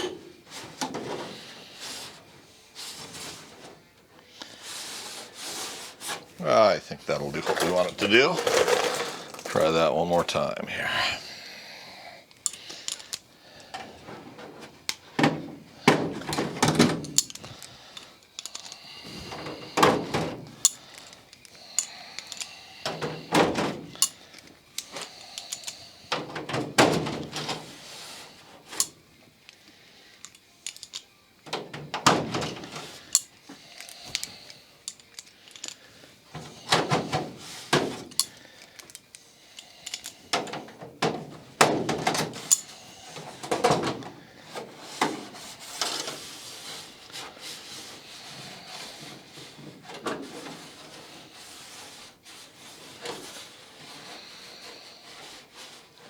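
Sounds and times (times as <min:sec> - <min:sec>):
thin metal sheet clunking and rattling: 0:07.4 - 0:09.7.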